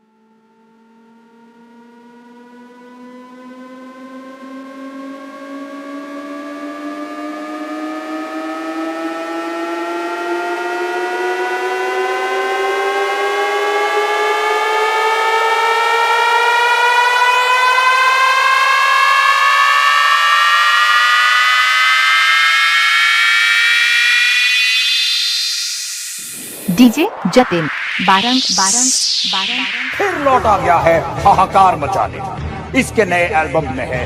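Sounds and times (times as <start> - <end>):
rising siren-like tone: 0.0 - 31.8
second rising tone: 21.0 - 31.7.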